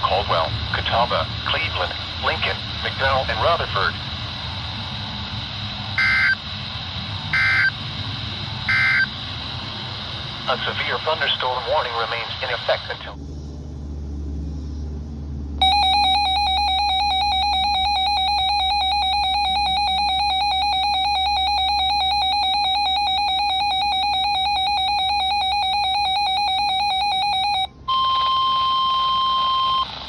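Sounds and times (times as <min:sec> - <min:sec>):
steady single-pitch alert tone: 0:06.0 - 0:06.4, 0:07.3 - 0:07.8, 0:08.7 - 0:09.1, 0:15.6 - 0:30.0
warbling electronic alarm tone: 0:06.0 - 0:06.4, 0:07.3 - 0:07.8, 0:08.7 - 0:09.1, 0:15.6 - 0:30.0.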